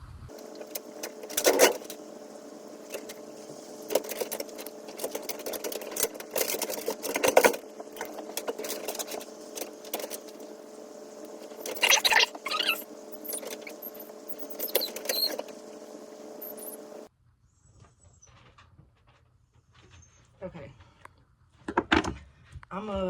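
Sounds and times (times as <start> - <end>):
steady electric hum: 0.0 - 17.1
handling clicks and rustles: 0.3 - 17.1.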